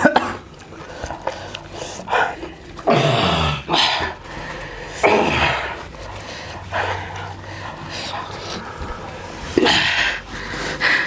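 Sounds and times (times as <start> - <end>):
person coughing and gagging: 0.0 - 0.5.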